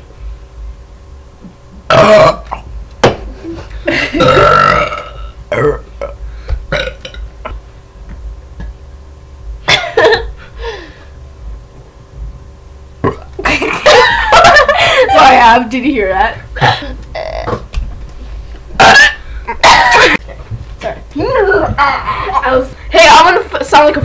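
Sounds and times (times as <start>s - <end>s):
girls burping: 1.9s - 2.5s, 3.9s - 7.2s, 16.6s - 17.6s, 18.8s - 20.2s.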